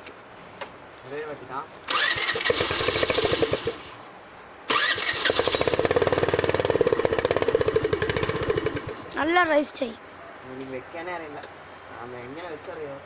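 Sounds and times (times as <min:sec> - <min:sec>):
motorcycle engine running: 0:05.3 - 0:09.2
faint high tone: 0:06.9 - 0:12.6.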